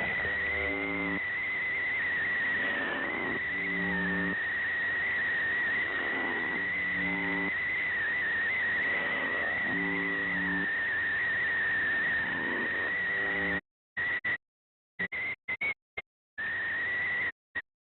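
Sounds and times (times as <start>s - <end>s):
short low radio buzz: 0.0s - 1.2s
steady high whistle: 1.1s - 12.2s.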